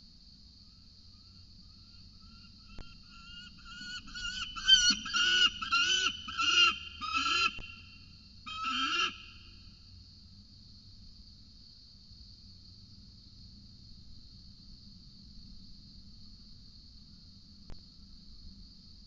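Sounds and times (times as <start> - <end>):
falcon calling harshly: 2.8 - 7.8, 8.5 - 9.6.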